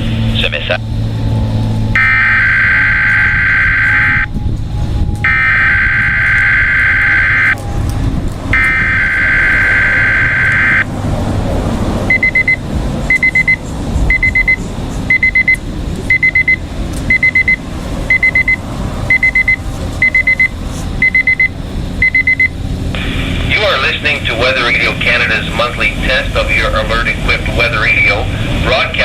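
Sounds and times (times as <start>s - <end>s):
two-tone alert data screech: 2.0s - 4.3s, 5.2s - 7.6s, 8.6s - 10.9s, 12.1s - 24.0s
weather radio alert beeps: 2.0s - 4.3s, 5.2s - 7.6s, 8.6s - 10.9s, 12.1s - 29.0s.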